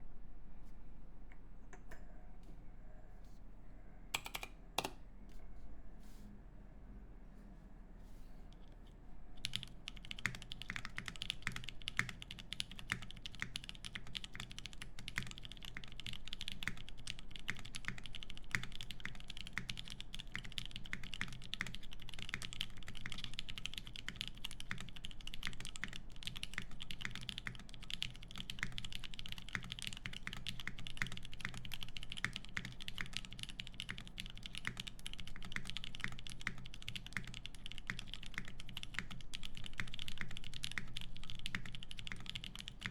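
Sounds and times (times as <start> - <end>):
mechanical keyboard typing: 4.2 - 5.0, 9.4 - 42.9.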